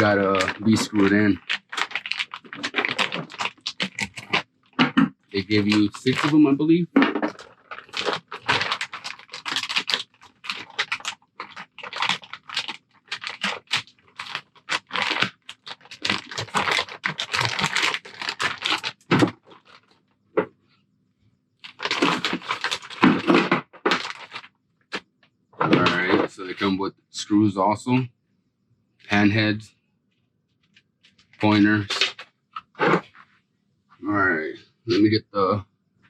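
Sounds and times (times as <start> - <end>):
packaging tearing and crinkling: 0.0 - 19.9, 21.6 - 24.5, 31.1 - 33.0.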